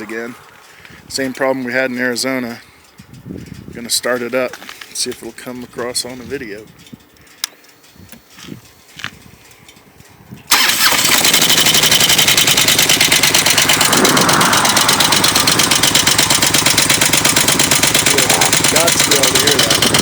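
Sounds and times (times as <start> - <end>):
motorcycle engine idling: 0.0 - 20.0
engine knock: 10.5 - 20.0.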